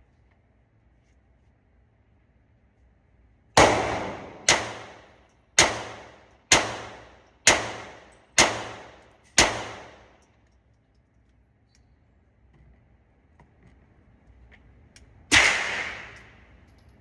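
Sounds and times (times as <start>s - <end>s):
pistol shots with echo: 3.6s - 10.2s, 15.3s - 16.4s.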